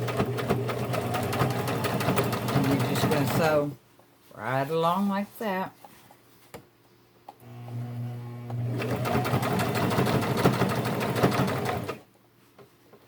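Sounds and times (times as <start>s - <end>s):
sewing machine stitching: 0.0s - 3.6s, 7.4s - 12.0s.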